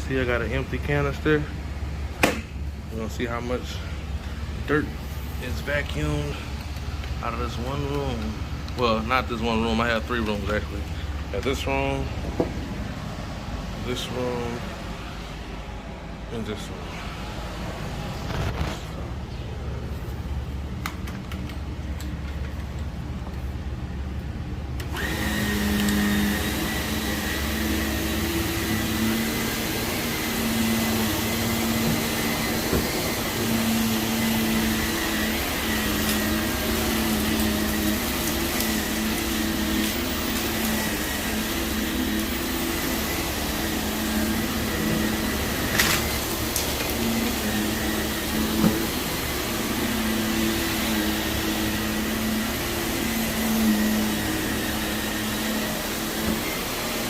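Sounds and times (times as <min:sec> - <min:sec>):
sharp knock: 0:02.2 - 0:02.5
vacuum cleaner running: 0:24.8 - 0:57.0.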